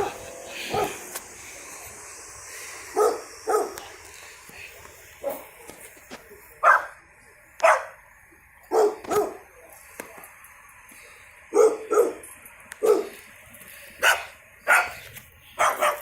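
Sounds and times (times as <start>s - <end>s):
dog barking: 0.0s - 1.0s, 3.0s - 3.8s, 5.2s - 5.5s, 6.6s - 7.0s, 7.6s - 8.0s, 8.7s - 9.4s, 11.5s - 12.2s, 12.8s - 13.1s, 14.0s - 15.0s, 15.6s - 16.0s.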